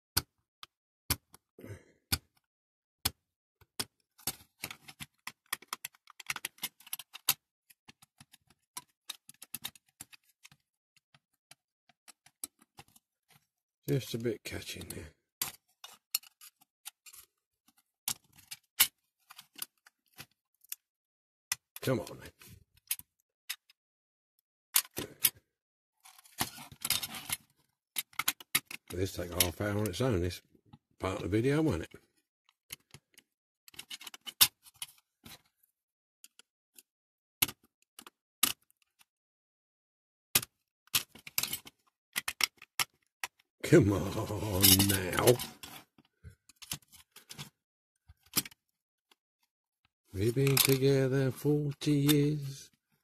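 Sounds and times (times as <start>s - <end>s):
clicks and scrapes of metal toy parts: 3.7s - 20.8s, 21.5s - 23.8s, 24.8s - 25.4s, 26.0s - 30.1s, 32.6s - 35.5s, 36.2s - 39.1s, 40.4s - 48.6s, 50.2s - 52.8s.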